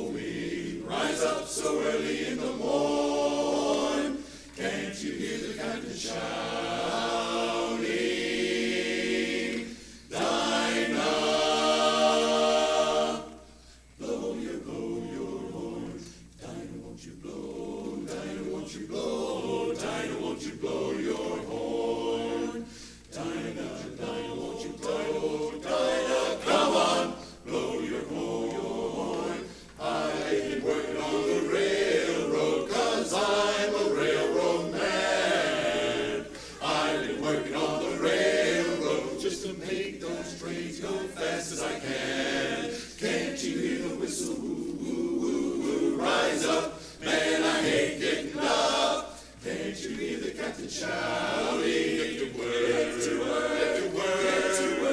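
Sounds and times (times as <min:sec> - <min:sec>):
chorus singing a cappella: 0:00.0 - 0:54.9.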